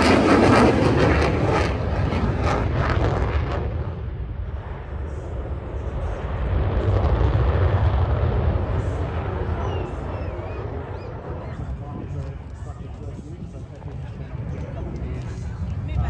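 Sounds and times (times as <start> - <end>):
jet engine rumble with crackle: 0.0 - 16.0.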